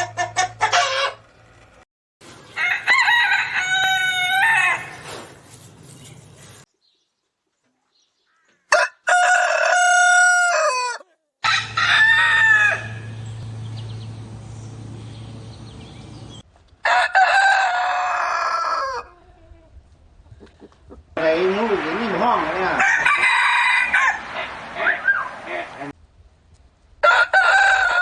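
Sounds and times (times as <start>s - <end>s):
roosters crowing: 0.0s - 1.4s, 2.4s - 5.4s, 8.7s - 13.4s, 16.1s - 19.4s, 21.4s - 25.8s, 27.0s - 28.0s.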